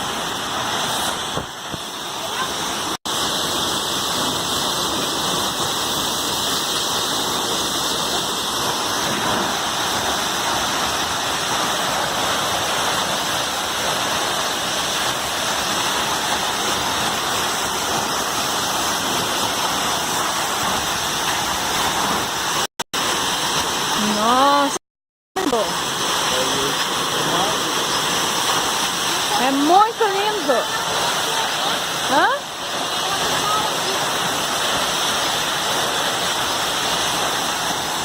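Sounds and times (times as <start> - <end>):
waterfall rushing: 0.0 - 24.8, 25.4 - 38.0.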